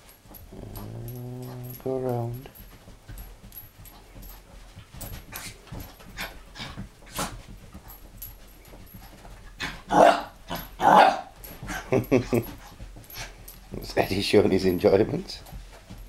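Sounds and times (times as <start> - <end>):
dog making excited sounds: 3.9 - 13.8.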